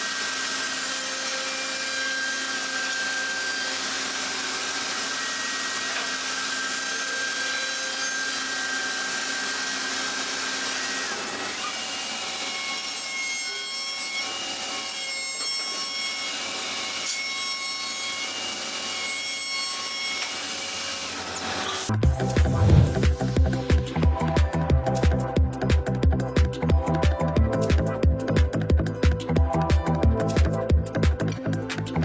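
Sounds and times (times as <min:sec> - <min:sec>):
power tool grinding wood: 0:00.0 - 0:12.3.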